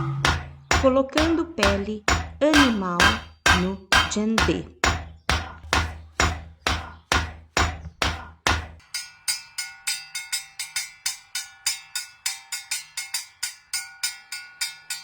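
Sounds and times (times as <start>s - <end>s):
knocking on drum: 0.0s - 8.8s.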